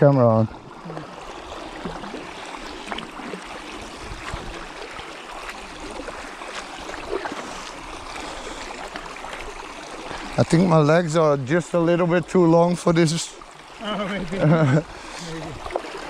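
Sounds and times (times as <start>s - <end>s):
water lapping and trickling: 0.0s - 16.0s
small knocks and splashes: 0.8s - 10.7s, 15.5s - 16.0s.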